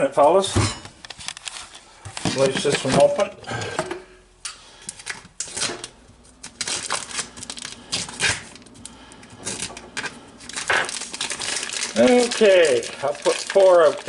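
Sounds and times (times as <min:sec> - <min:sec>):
plastic packaging crinkling: 0:05.0 - 0:14.0.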